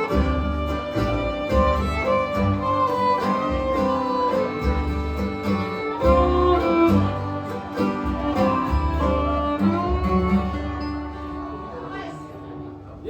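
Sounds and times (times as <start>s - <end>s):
low bass notes: 0.0s - 11.5s
fiddle melody: 0.0s - 12.8s
acoustic guitar: 0.0s - 13.0s.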